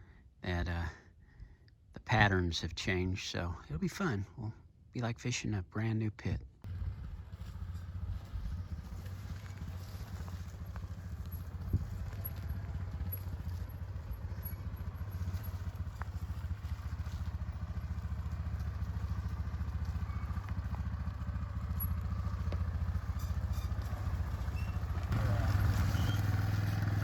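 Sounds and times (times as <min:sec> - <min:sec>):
atv engine running: 0:06.6 - 0:27.0.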